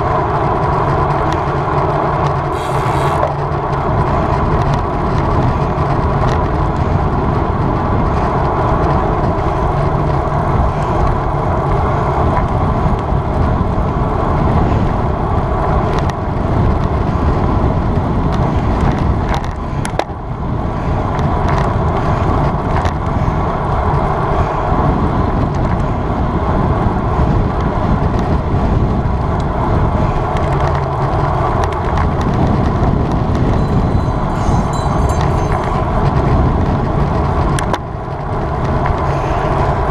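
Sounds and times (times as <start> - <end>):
bicycle road noise: 0.0 - 39.9
wind rushing: 28.9 - 38.2.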